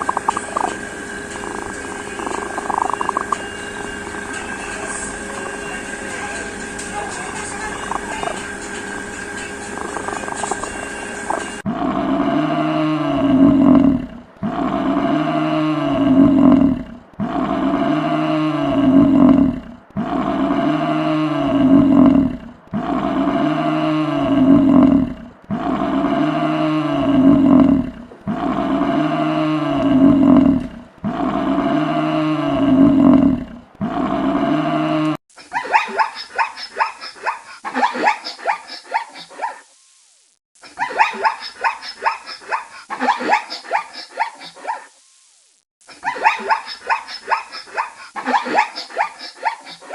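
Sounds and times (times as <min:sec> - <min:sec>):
animal yelping calls: 0:00.0 - 0:03.4, 0:07.2 - 0:08.5, 0:09.7 - 0:11.6, 0:35.4 - 0:39.7, 0:40.6 - 0:44.9, 0:45.9 - 0:49.9
animal low drawn-out call: 0:00.0 - 0:35.2.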